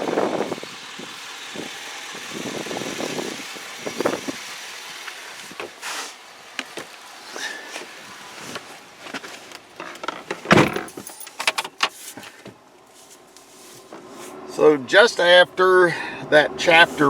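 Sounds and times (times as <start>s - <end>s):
vehicle running at low speed: 0.0s - 8.7s
knocks and rattles: 9.8s - 11.9s.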